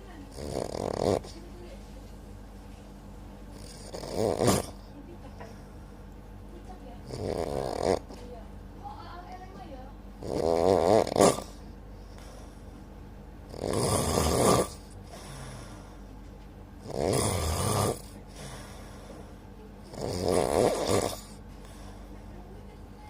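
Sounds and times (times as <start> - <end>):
steady low hum: 0.0 - 23.0
person snoring: 0.3 - 1.4, 3.6 - 4.8, 7.1 - 8.1, 10.2 - 11.6, 13.5 - 16.0, 16.8 - 19.1, 19.8 - 21.4.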